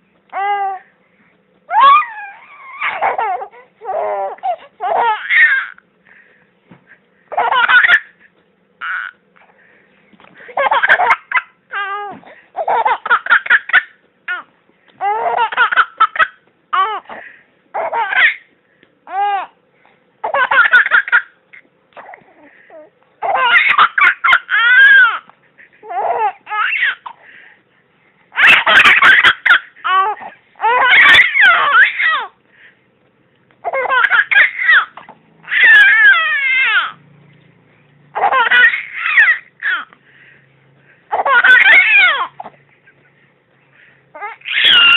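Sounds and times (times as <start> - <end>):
high-pitched laughter: 41.1 - 43.0, 44.2 - 44.9.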